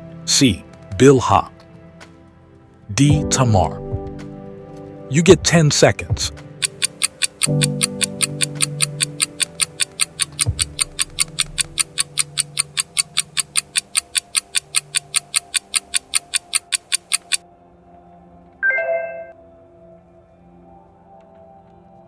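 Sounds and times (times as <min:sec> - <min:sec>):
soft background music: 0:00.0 - 0:22.0
rapid clock ticking: 0:06.5 - 0:17.4.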